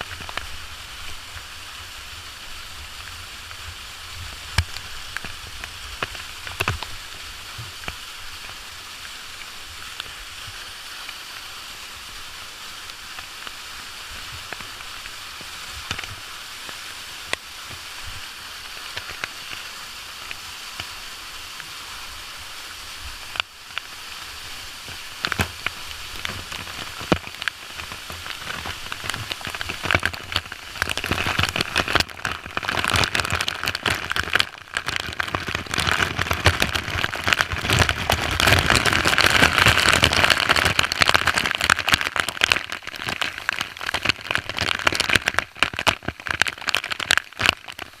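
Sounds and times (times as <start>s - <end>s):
waterfall spray on microphone: 0.0s - 48.0s.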